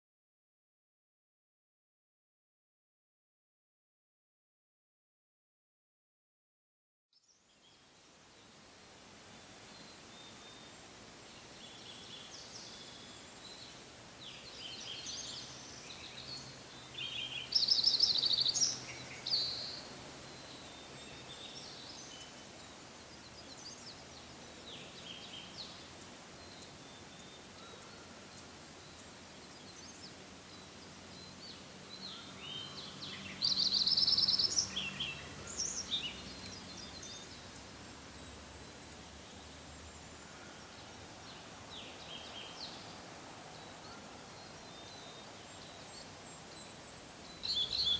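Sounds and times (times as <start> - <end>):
faint outdoor hiss: 7.2 - 47.9
bird song with fast trill: 11.6 - 37.4, 38.2 - 47.9.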